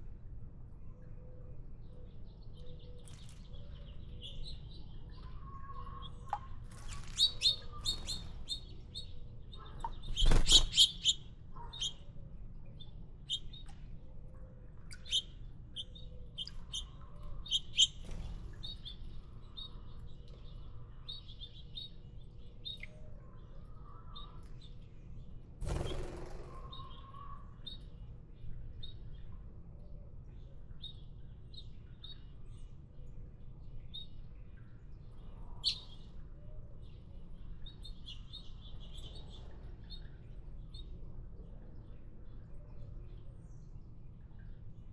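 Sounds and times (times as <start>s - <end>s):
small songbirds chirping: 1.8s - 13.9s, 14.8s - 25.9s, 26.7s - 44.9s.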